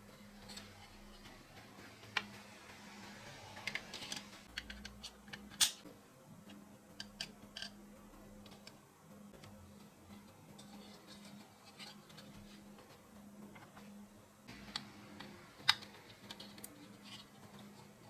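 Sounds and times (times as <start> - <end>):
faint steady hum: 0.0 - 18.0
small parts clicking and tapping: 3.6 - 5.8, 6.5 - 7.8, 14.5 - 18.0.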